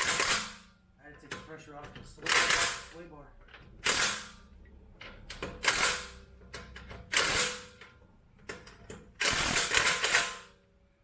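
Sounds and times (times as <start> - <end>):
ratchet wrench clicking: 2.2 - 3.0, 5.1 - 10.5.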